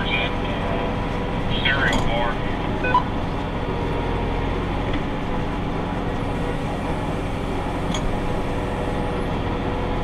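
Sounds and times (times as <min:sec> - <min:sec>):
tractor engine drone: 0:00.0 - 0:10.0.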